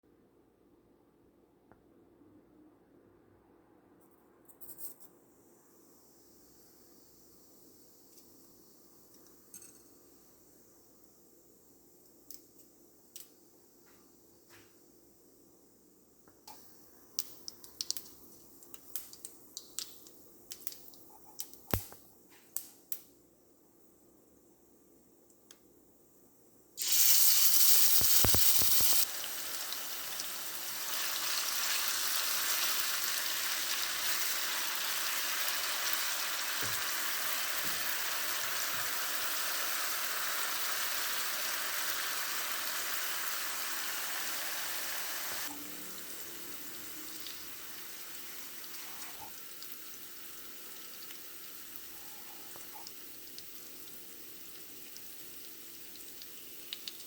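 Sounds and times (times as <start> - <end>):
vegetables sizzling in hot oil: 26.8 - 57.0.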